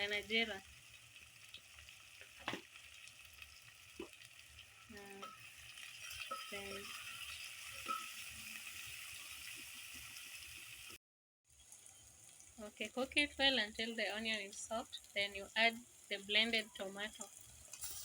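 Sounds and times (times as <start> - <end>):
onions sizzling in hot oil: 0.0 - 18.0.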